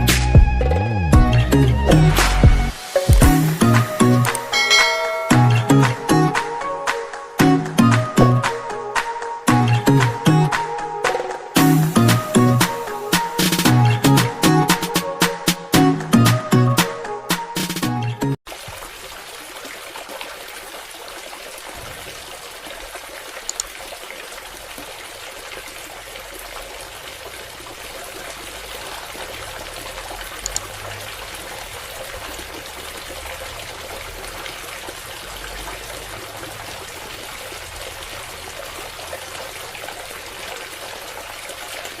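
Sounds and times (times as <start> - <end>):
water trickling and pouring: 1.9 - 6.2, 18.5 - 42.0
faint clicks: 23.4 - 23.7, 30.4 - 30.7.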